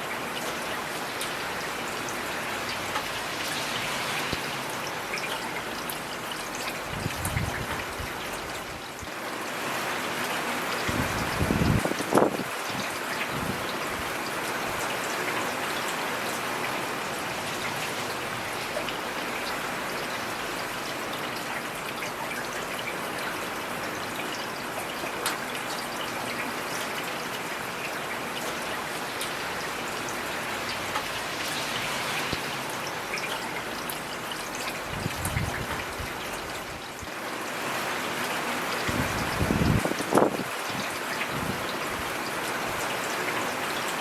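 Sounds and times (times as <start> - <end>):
heavy rain hissing: 1.0 - 7.0, 28.4 - 43.6
rain drop ticks: 24.3 - 27.1, 27.8 - 36.6.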